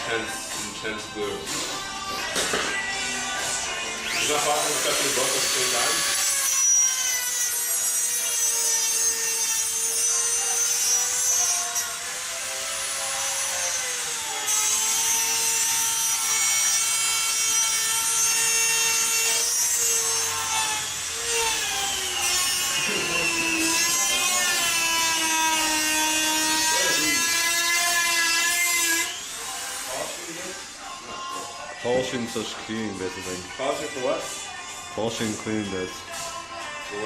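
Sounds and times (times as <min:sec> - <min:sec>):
rotary tool cutting metal: 0:01.5 - 0:30.8.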